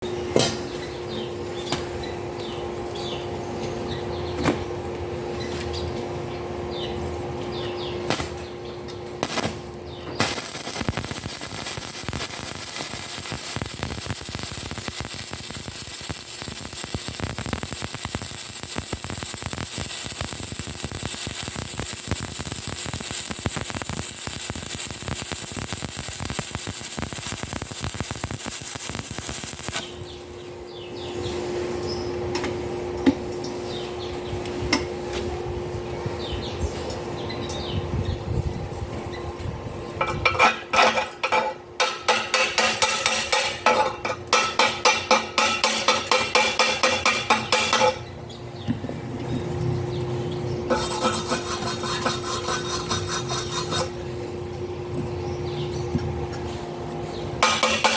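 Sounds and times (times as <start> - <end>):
steady hum: 0.0 - 57.9
welding arc crackling: 8.0 - 8.5, 9.1 - 31.1, 40.0 - 48.1, 49.9 - 54.6, 57.4 - 57.9.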